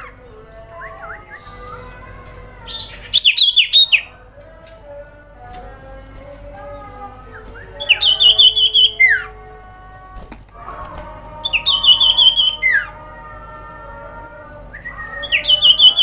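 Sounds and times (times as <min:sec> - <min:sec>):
bird singing jingling trill: 0:00.0 - 0:04.1, 0:06.2 - 0:09.4, 0:11.4 - 0:13.0, 0:14.8 - 0:16.0.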